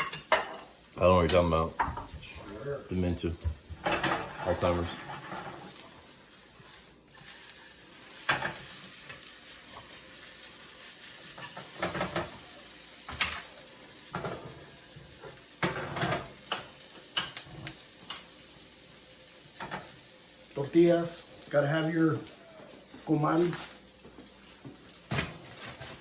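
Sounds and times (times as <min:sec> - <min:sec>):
food sizzling in a frying pan: 0:00.0 - 0:26.0
utensil scraping a pan: 0:03.8 - 0:10.3.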